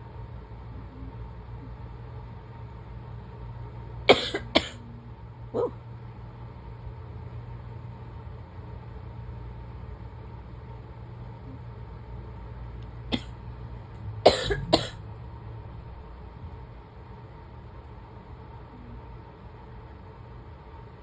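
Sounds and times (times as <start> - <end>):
steady low hum: 0.0 - 21.0
person coughing: 4.1 - 4.8, 13.1 - 13.3, 14.3 - 15.0.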